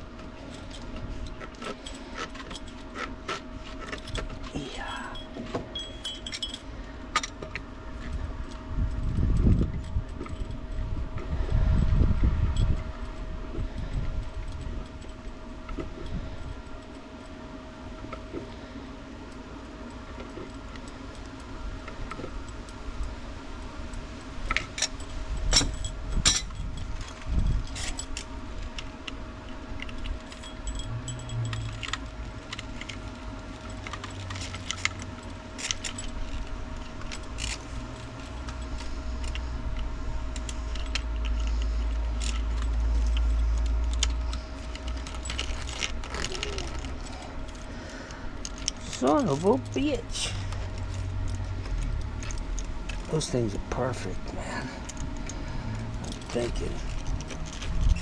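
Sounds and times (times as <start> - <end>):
low rumble: 29.8 - 35.3, 36.0 - 58.0.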